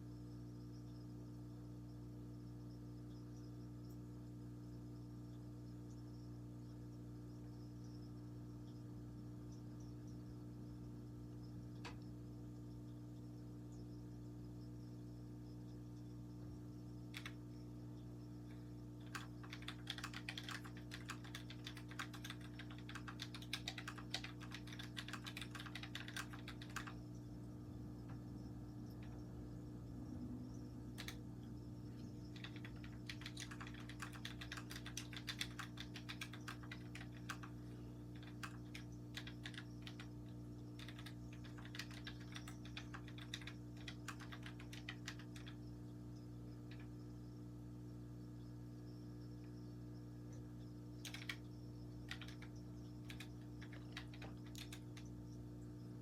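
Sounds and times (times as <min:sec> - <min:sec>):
steady low hum: 0:00.0 - 0:56.0
mechanical keyboard typing: 0:17.1 - 0:17.4, 0:19.0 - 0:27.0, 0:30.9 - 0:31.2, 0:32.3 - 0:45.6, 0:51.0 - 0:55.1.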